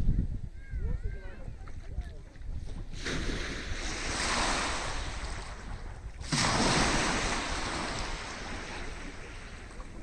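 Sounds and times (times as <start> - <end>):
sea wave breaking on beach: 3.0 - 9.8.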